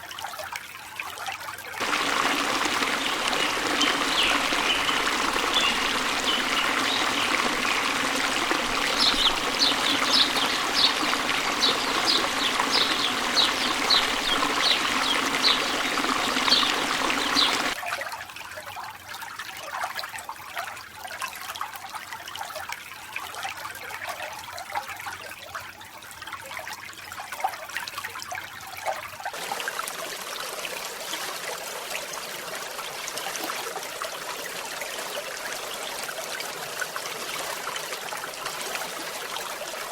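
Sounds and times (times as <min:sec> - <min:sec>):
stream water rushing: 0:01.8 - 0:17.8, 0:29.4 - 0:39.9.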